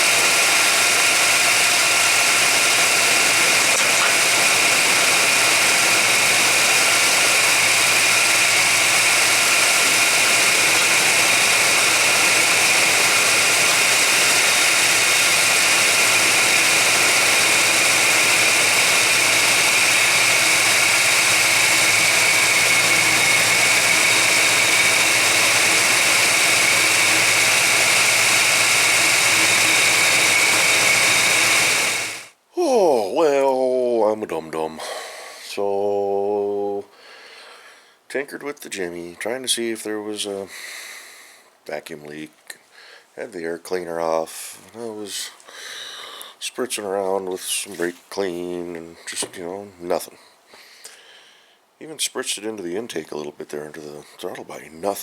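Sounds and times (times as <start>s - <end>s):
car engine idling roughly: 0.0s - 32.3s
constant hiss: 32.4s - 55.0s.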